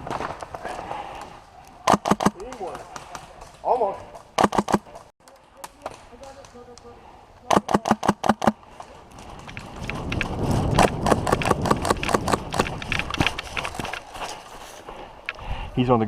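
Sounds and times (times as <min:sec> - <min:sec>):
clicks and rustle: 0:07.5 - 0:15.4.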